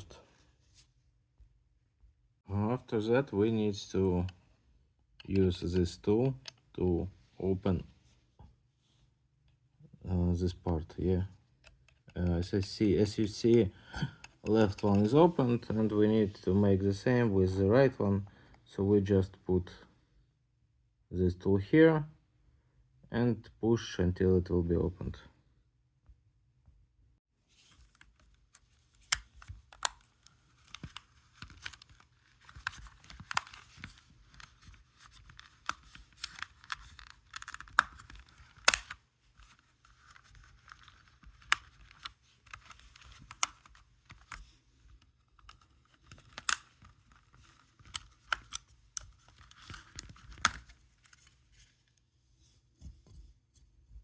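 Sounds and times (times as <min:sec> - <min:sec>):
sharp plastic clicks: 0:35.2 - 0:39.0, 0:45.4 - 0:46.9.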